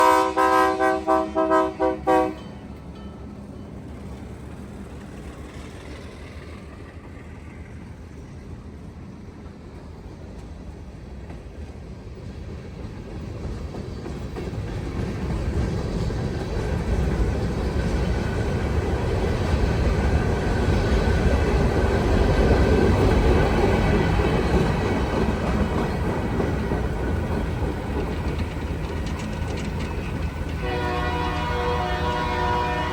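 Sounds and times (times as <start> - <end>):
locomotive chime horn: 0.0 - 2.7, 30.6 - 32.9
locomotive rumbling on rails: 0.0 - 32.9.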